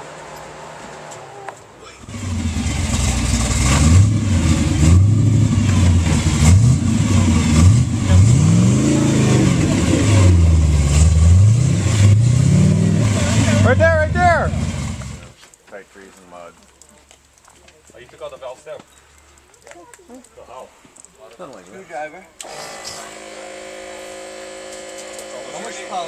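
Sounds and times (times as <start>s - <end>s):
truck engine revving: 0.0s - 15.4s, 22.4s - 26.0s.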